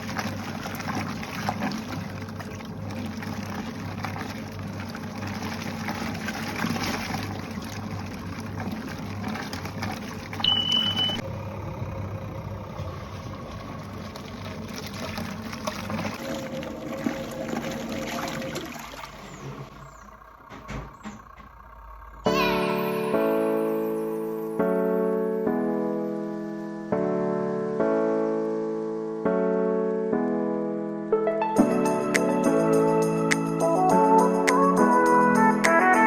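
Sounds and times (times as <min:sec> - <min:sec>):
washing machine running: 0:00.0 - 0:25.3
short high beep: 0:10.4 - 0:11.2.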